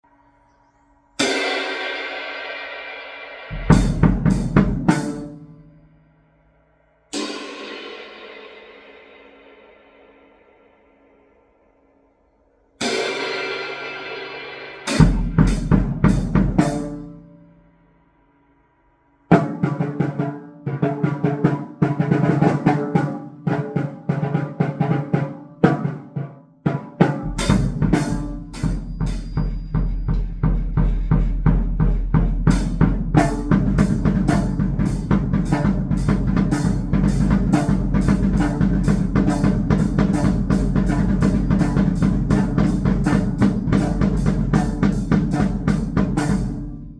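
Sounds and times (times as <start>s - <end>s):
drum kit playing: 1.2s - 5.8s, 7.1s - 10.5s, 12.8s - 17.2s, 26.9s - 46.9s
cymbal hits: 1.2s - 6.0s, 7.1s - 11.4s, 12.8s - 17.9s, 27.3s - 30.4s.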